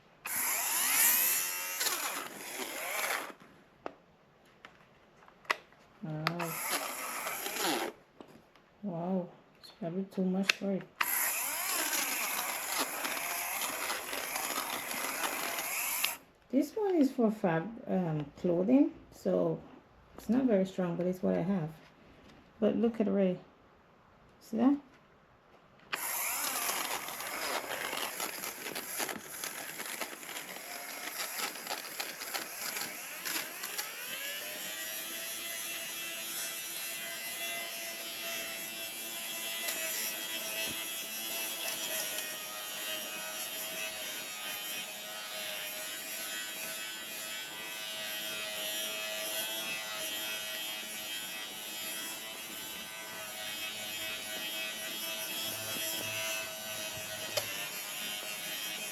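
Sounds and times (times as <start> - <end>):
fabric shaver blades crackling: 0.0 - 3.4, 6.3 - 8.0, 11.0 - 16.2, 25.9 - 46.4
fabric shaver motor humming: 0.2 - 3.4, 6.3 - 8.0, 11.0 - 16.2, 25.9 - 58.9.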